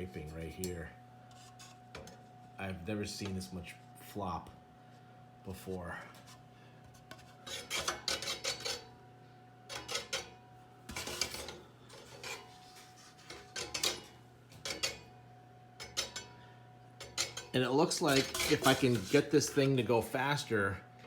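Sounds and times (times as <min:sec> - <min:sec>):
fan motor humming: 0:00.0 - 0:21.0
fan blade scraping housing: 0:01.3 - 0:02.2, 0:05.6 - 0:08.9, 0:09.7 - 0:10.3, 0:10.9 - 0:15.0, 0:17.0 - 0:20.6.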